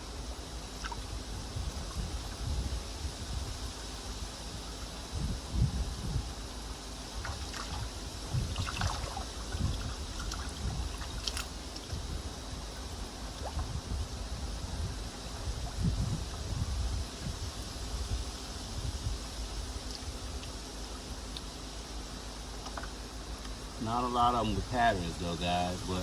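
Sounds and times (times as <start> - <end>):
low rumbles: 0.0 - 26.0
water splashing in a tub: 7.1 - 12.0.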